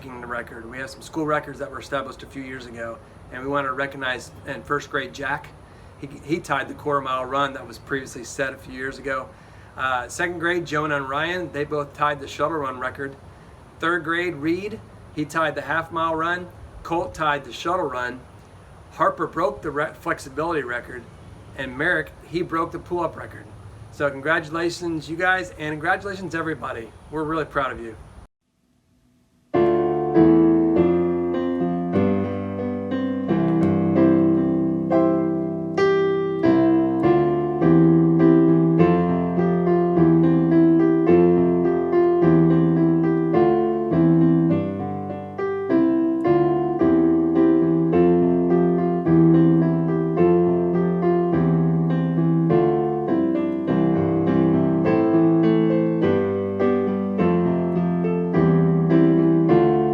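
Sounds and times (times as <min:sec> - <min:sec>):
solo piano music: 0:29.5 - 0:59.9.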